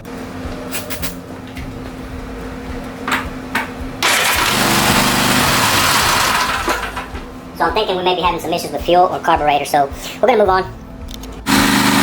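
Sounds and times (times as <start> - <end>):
steady hum: 0.0 - 12.0
mower engine cranking and running: 4.0 - 7.2, 11.5 - 12.0.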